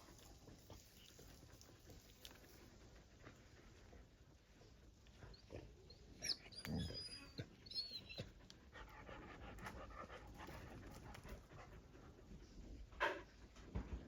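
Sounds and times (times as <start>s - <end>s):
dogs panting: 0.0s - 14.0s
dogs whining: 5.1s - 8.4s.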